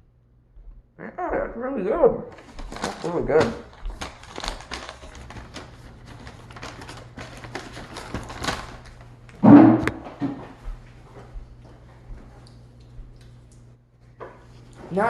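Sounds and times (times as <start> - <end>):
throat hum: 1.0 - 2.4
chewing and mouth noises: 2.3 - 6.8, 11.1 - 14.9.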